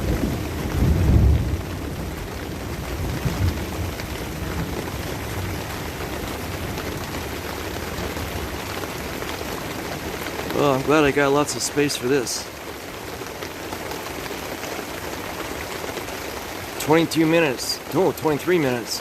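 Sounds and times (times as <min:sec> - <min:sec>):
low thunder rumble: 0:00.0 - 0:07.4
steady rain: 0:00.0 - 0:19.0.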